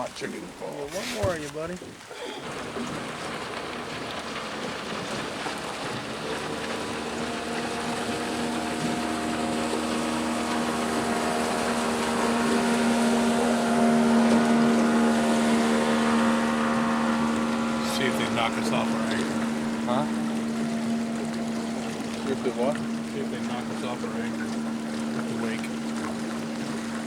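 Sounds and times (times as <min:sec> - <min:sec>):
motorboat engine hum: 0:00.0 - 0:27.0.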